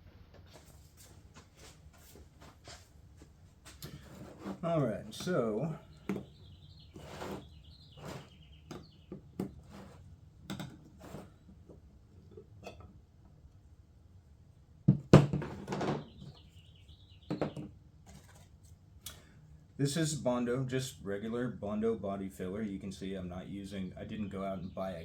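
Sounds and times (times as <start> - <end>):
objects clattering on workbench: 8.0 - 12.9, 14.9 - 16.3.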